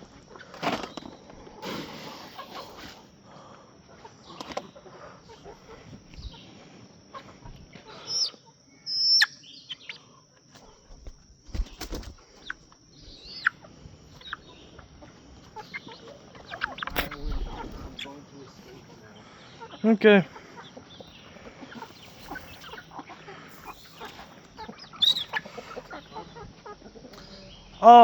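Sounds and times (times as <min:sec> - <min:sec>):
chickens clucking: 0:00.0 - 0:27.8
wings flapping: 0:00.5 - 0:01.2, 0:10.5 - 0:12.6, 0:15.5 - 0:18.1
sharp high chicken calls: 0:07.1 - 0:10.1, 0:11.6 - 0:18.2, 0:19.6 - 0:27.0.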